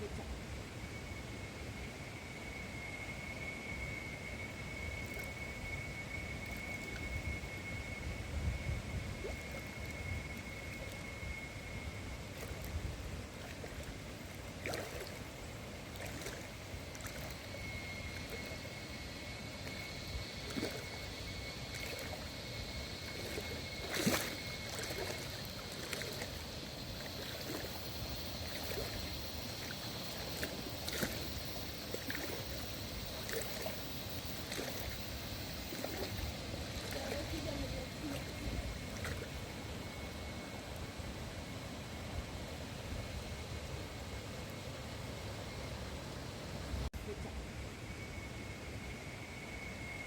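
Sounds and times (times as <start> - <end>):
faint high-pitched tone: 0.0 - 46.2, 46.8 - 50.0
small splashes: 9.2 - 11.1, 12.3 - 18.6, 19.6 - 21.1, 21.7 - 22.3, 23.0 - 39.5
river water rushing over stones: 23.1 - 39.2.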